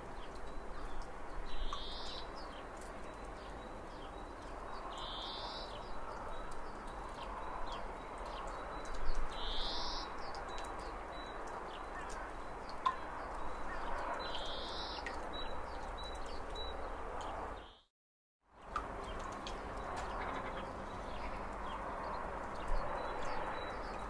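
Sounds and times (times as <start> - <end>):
outdoor ambience hiss: 0.0 - 17.8.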